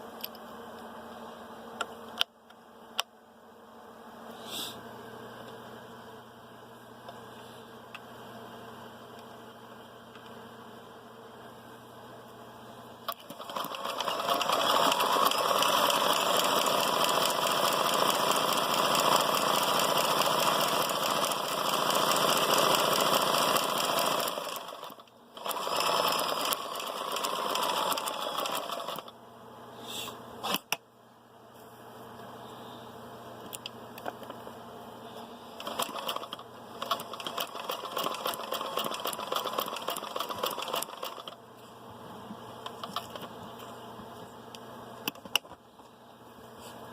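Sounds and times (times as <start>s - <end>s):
sewing machine stitching: 13.1s - 29.1s, 35.6s - 41.4s.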